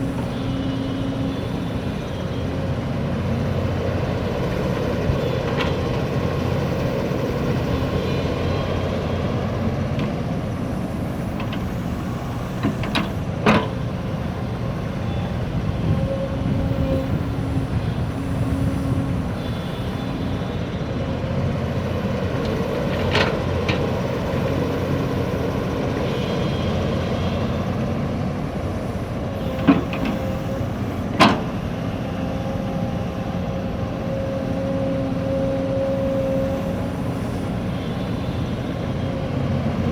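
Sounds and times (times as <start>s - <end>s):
backhoe engine running: 0.0s - 39.9s.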